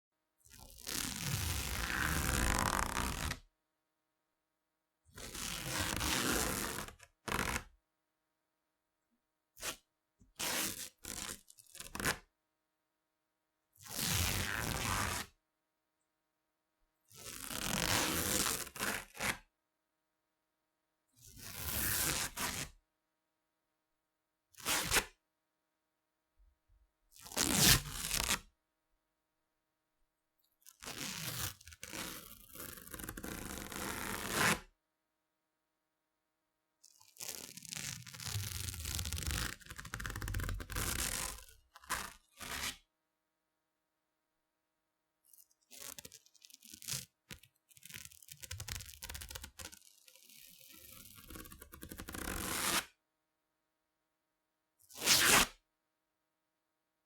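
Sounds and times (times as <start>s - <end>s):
duct tape ripping off roll: 55.0s - 55.6s.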